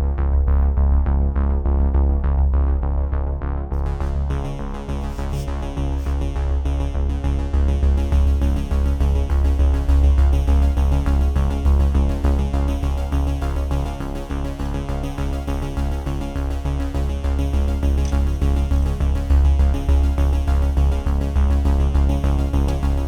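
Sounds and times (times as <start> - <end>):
electronic music with heavy bass: 2.8 - 23.0.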